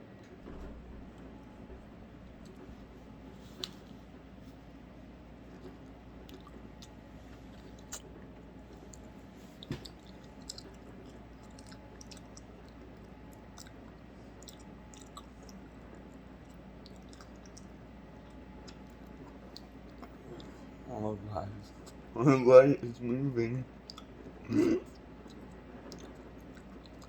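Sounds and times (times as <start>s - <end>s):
person chewing: 5.5s - 20.7s, 23.8s - 27.0s.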